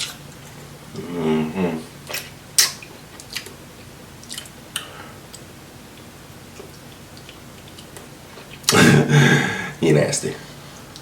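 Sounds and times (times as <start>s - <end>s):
mouth clicks and smacks: 2.0s - 3.6s
wet chewing: 2.0s - 3.6s, 4.2s - 5.5s, 6.5s - 8.8s.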